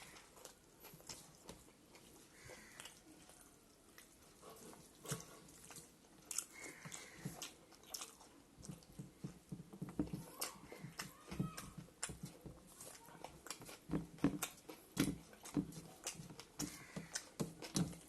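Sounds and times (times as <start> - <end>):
person chewing food: 0.0 - 18.0.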